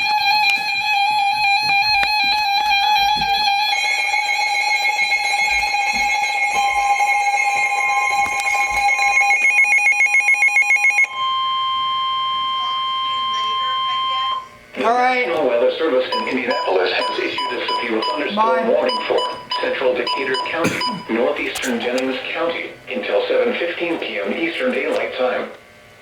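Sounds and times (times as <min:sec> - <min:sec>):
electronic musical tones: 0:00.0 - 0:14.2, 0:16.1 - 0:21.2
loud steady alarm tone: 0:00.0 - 0:14.6, 0:15.6 - 0:24.3.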